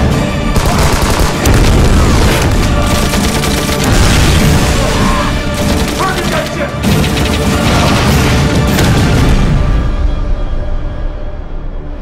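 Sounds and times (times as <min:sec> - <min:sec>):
loud film music: 0:00.0 - 0:12.0
rapid gunfire: 0:00.5 - 0:09.4.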